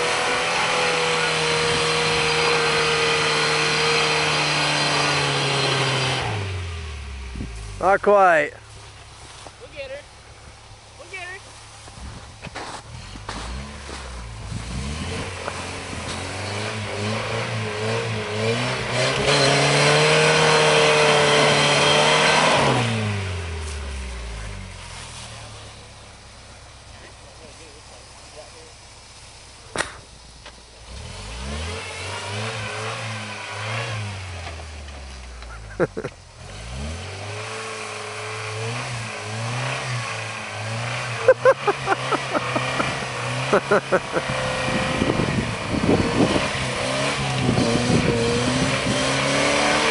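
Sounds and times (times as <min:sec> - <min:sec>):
engine revving hard: 0:00.0 - 0:08.4, 0:12.9 - 0:25.8, 0:30.8 - 0:34.7, 0:35.6 - 0:49.9.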